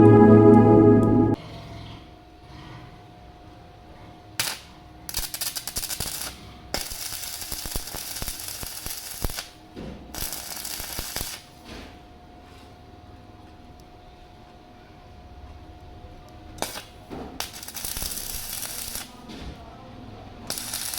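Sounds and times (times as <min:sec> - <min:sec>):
arc welding crackling: 0:04.4 - 0:11.6, 0:16.6 - 0:19.4, 0:20.4 - 0:20.9.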